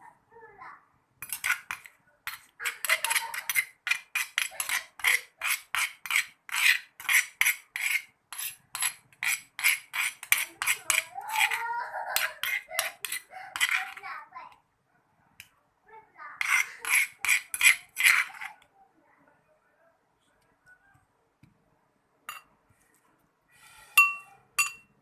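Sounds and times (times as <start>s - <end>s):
utensil knocking and scraping in bowl: 1.2s - 14.1s, 16.4s - 18.6s, 23.6s - 24.9s.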